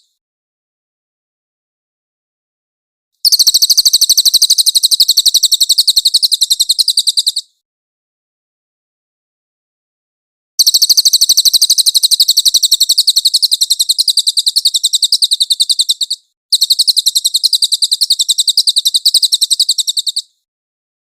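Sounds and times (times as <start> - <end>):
bird singing rapid trill: 3.2 - 7.6, 10.6 - 20.5.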